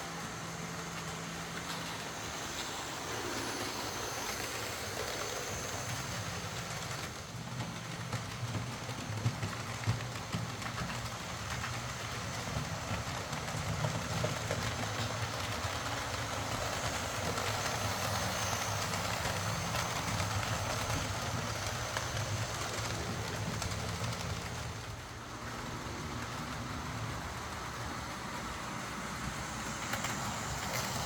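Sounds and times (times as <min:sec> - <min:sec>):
model train motor hum: 0:00.0 - 0:31.0.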